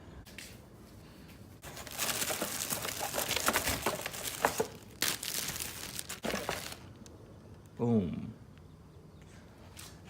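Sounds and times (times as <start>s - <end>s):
packaging crinkling and rustling: 1.6s - 7.1s.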